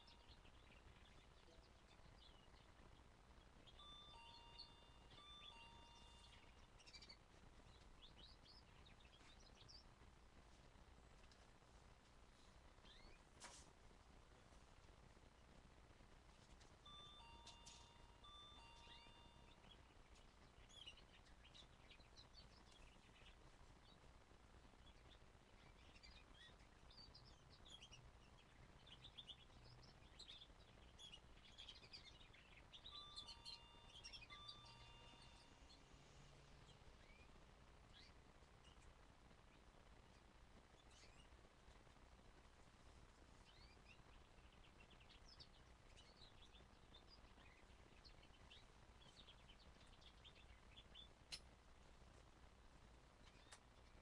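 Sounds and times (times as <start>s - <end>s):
canary chirping: 0.0s - 13.4s, 16.3s - 52.2s, 53.1s - 54.0s
canary twittering: 3.4s - 9.8s, 16.9s - 23.3s, 25.6s - 35.9s.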